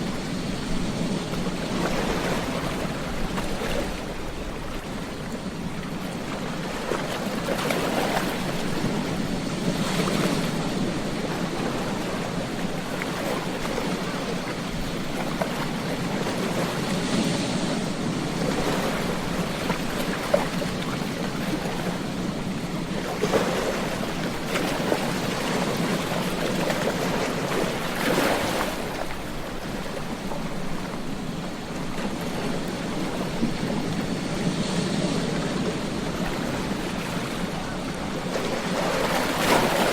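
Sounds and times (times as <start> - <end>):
ocean waves breaking on beach: 0.0 - 39.9.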